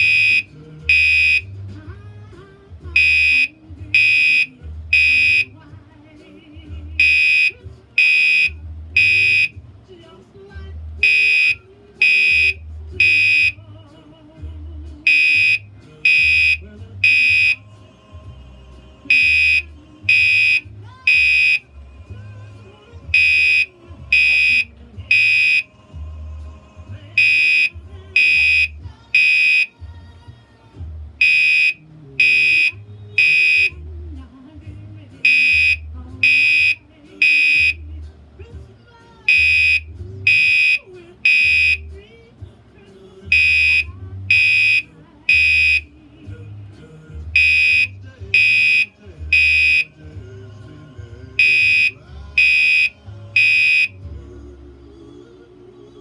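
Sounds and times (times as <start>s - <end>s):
fire alarm horn beeping: 0.0s - 1.6s, 3.0s - 5.6s, 7.0s - 9.6s, 11.0s - 13.6s, 15.0s - 17.6s, 19.1s - 21.7s, 23.1s - 25.7s, 27.2s - 29.8s, 31.2s - 33.8s, 35.2s - 37.8s, 39.3s - 41.9s, 43.3s - 45.9s, 47.4s - 50.0s, 51.4s - 54.1s.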